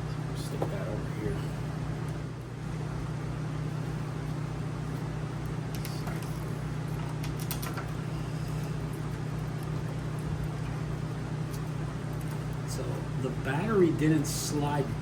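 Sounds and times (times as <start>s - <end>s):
low machinery hum: 0.0s - 15.0s.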